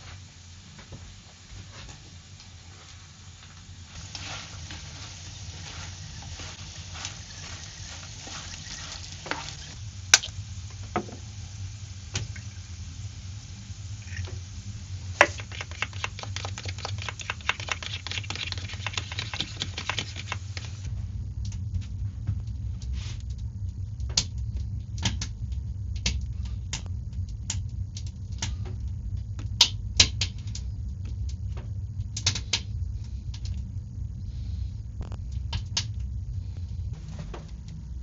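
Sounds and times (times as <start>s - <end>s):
food sizzling: 0.0s - 20.9s
dense crackling: 0.0s - 38.0s
scattered clicks: 15.2s - 21.7s, 22.4s - 33.7s, 35.0s - 37.9s.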